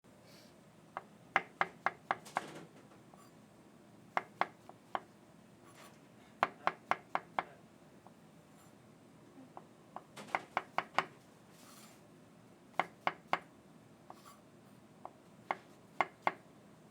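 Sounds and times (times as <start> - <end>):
knife chopping on cutting board: 6.4 - 7.4, 10.3 - 11.1, 12.8 - 13.5, 15.5 - 16.4.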